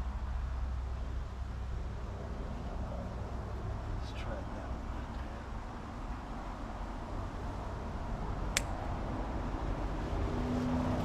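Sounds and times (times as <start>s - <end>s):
steady low rumble: 0.0s - 11.0s
sharp snip of a stalk cut: 8.5s - 8.8s.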